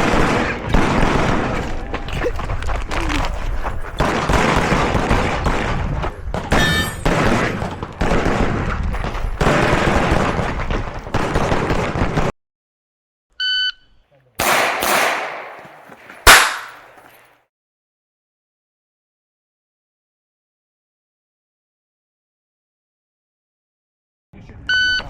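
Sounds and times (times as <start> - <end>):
rapid pistol gunfire: 0.0 - 1.7, 4.0 - 5.9, 6.5 - 8.6, 9.4 - 12.3, 14.4 - 17.0.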